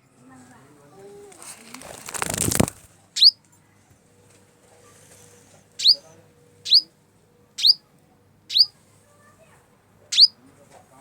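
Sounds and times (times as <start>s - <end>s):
small bird chirping: 3.2s - 3.4s, 5.8s - 7.0s, 7.6s - 7.9s, 8.5s - 8.8s, 10.1s - 10.4s.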